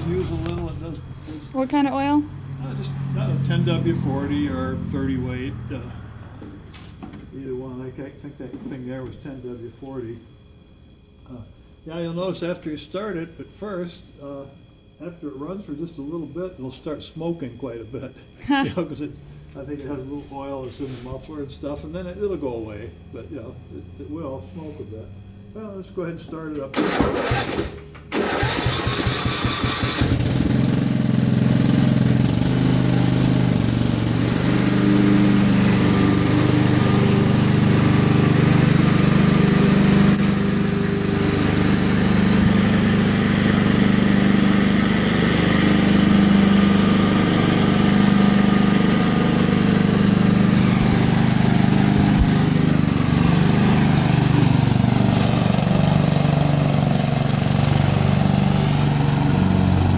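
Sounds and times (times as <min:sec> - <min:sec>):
riding lawn mower engine starting: 0:00.0 - 0:07.4, 0:26.5 - 0:59.9.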